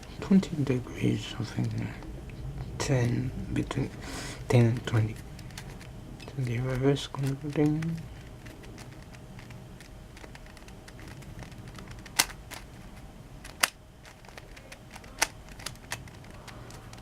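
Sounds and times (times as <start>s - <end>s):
sharp plastic clacks: 4.6s - 17.0s
plastic puzzle turning clicks: 5.4s - 12.7s, 13.4s - 17.0s.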